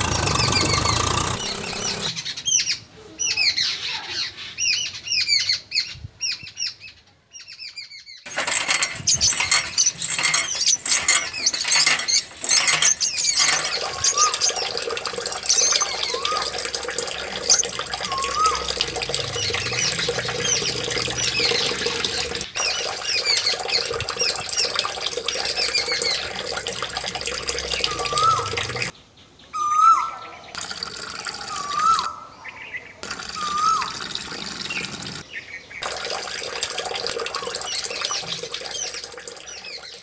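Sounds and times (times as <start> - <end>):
water running: 0.0 - 2.1, 8.3 - 28.9, 30.6 - 32.1, 33.0 - 35.2, 35.8 - 40.0
birds chirping: 0.0 - 36.5, 37.1 - 40.0
rising and falling bird call: 15.6 - 23.9, 27.7 - 28.9, 29.5 - 30.6, 31.3 - 34.1.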